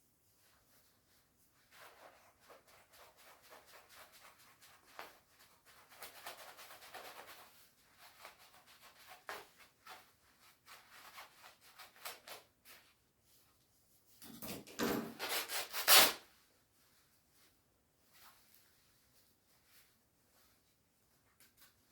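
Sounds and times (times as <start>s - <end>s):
jacket fabric rustling: 15.9s - 21.9s.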